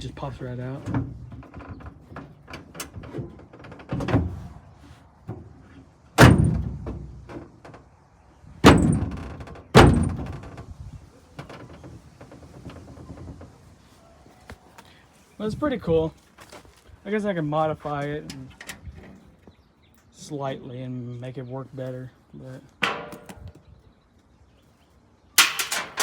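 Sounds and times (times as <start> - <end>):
truck toolbox lid banging shut: 6.2 - 7.1, 8.6 - 9.2, 9.8 - 10.3, 22.8 - 23.5, 25.4 - 26.0.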